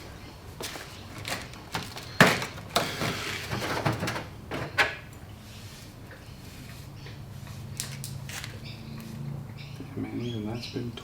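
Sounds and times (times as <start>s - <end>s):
metal parts scraping: 1.1s - 4.9s.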